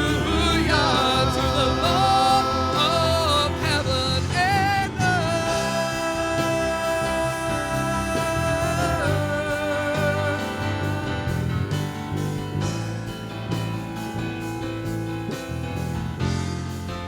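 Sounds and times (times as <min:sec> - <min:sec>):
person singing: 0:00.0 - 0:11.8
guitar and bass: 0:00.0 - 0:17.0.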